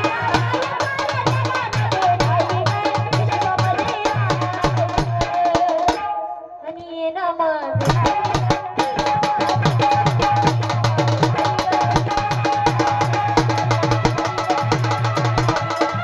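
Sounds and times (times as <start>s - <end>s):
held instrumental melody line: 7.8s - 16.0s.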